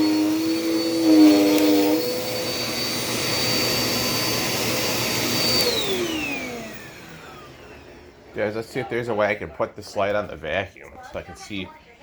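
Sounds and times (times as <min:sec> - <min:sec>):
vacuum cleaner motor whine: 0:00.0 - 0:09.4.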